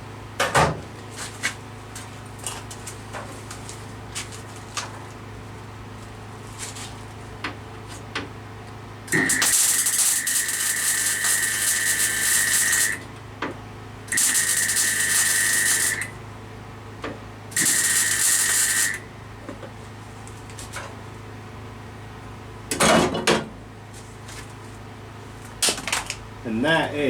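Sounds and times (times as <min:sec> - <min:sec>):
welding on steel: 0:09.1 - 0:13.0, 0:14.1 - 0:16.1, 0:17.5 - 0:19.0.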